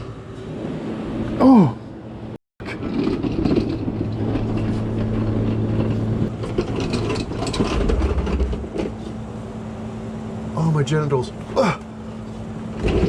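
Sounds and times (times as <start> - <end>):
metal clicks and clanks: 2.6 - 9.0.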